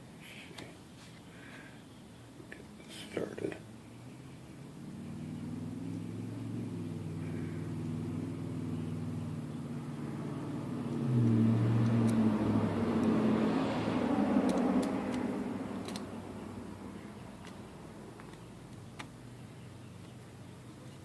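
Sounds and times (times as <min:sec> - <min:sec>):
engine running: 0:04.0 - 0:20.4
sharp clicks: 0:14.4 - 0:16.2.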